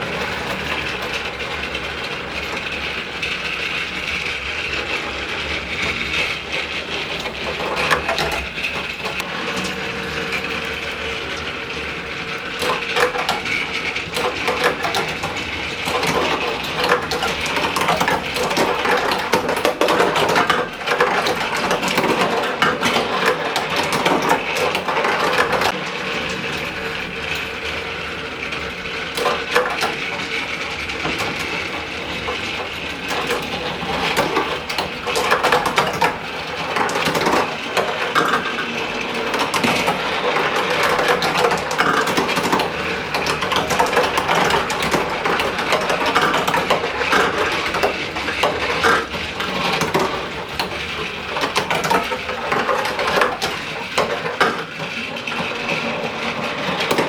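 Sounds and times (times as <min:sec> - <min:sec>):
marbles rattling down a marble run: 0:00.0 - 0:57.0.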